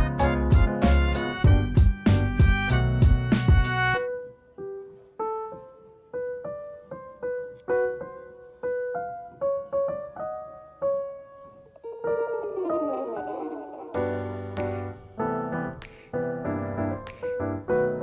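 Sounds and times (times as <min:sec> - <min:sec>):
slow piano melody: 0:00.0 - 0:18.0.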